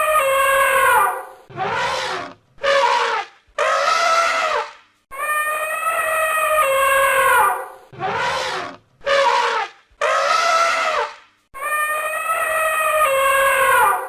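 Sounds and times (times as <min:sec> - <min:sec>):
elephant trumpeting: 0:00.0 - 0:14.0.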